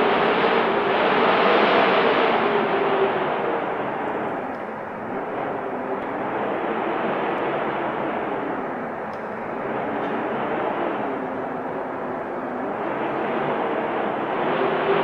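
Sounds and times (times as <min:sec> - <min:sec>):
rushing wind: 0:00.0 - 0:15.0.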